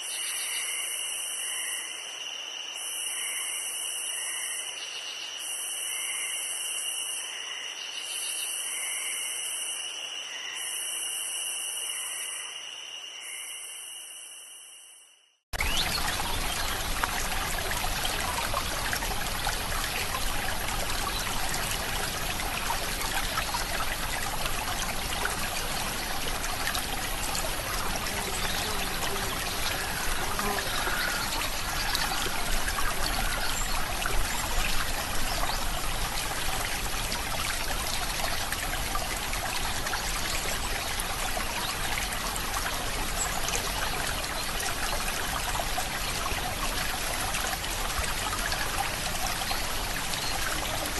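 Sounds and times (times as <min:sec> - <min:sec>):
water trickling: 0:15.6 - 0:50.9.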